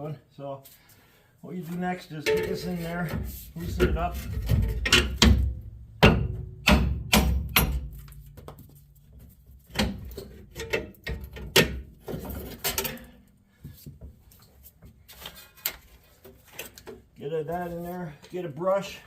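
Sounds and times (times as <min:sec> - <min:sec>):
metal knocks from hand tools: 0:02.3 - 0:07.9.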